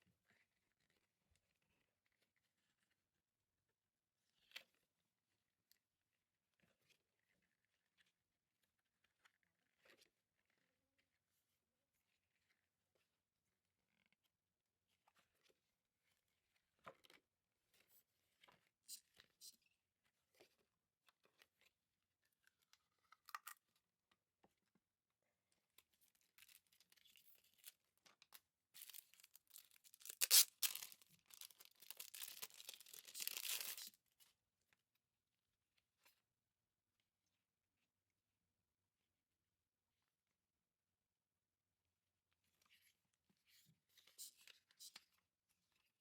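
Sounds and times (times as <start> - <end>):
packaging tearing and rustling: 28.8 - 34.0.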